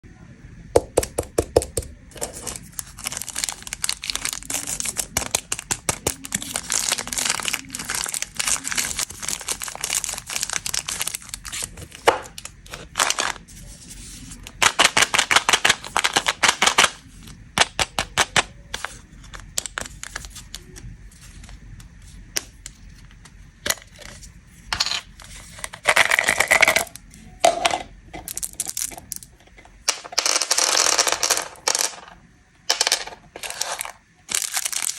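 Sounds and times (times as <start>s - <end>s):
plastic wrappers crinkling and tearing: 1.7s - 21.5s, 28.2s - 29.3s, 33.3s - 34.9s.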